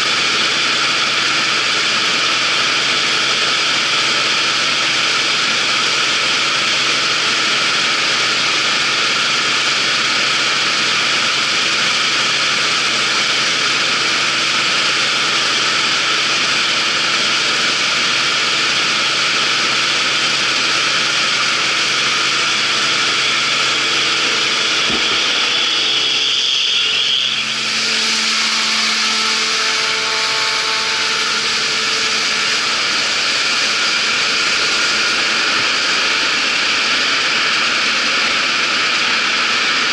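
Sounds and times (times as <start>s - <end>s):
combine harvester running: 0.0s - 39.9s
short rising whine: 20.3s - 37.9s.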